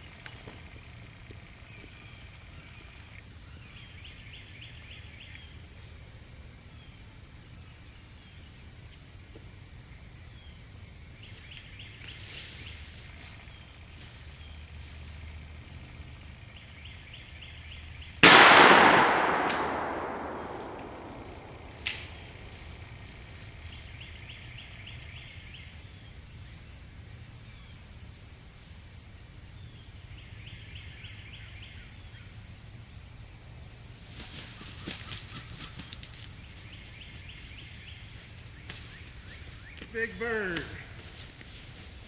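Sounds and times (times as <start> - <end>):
shotgun shot: 18.2 - 22.2
sharp crack: 18.2 - 22.4.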